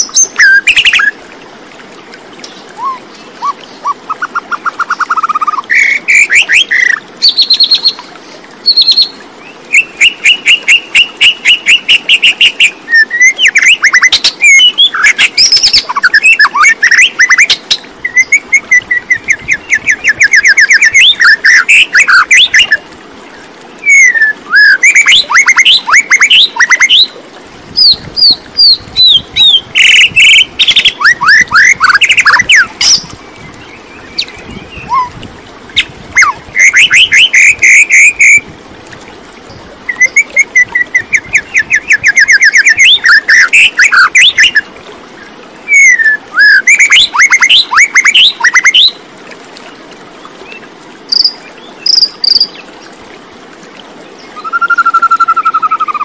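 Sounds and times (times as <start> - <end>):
songbird singing trills: 2.4 - 8.0, 8.6 - 22.8, 23.8 - 27.1, 27.8 - 35.2, 35.8 - 38.4, 39.9 - 44.6, 45.7 - 49.0, 50.4 - 52.6.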